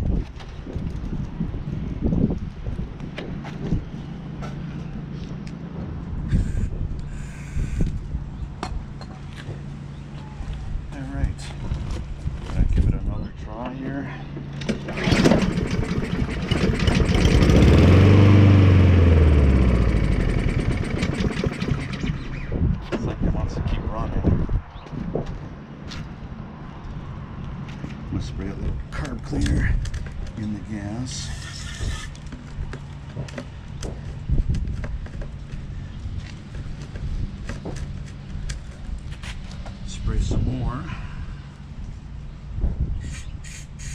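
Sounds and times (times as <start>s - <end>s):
lawnmower engine surging: 14.5s - 22.5s.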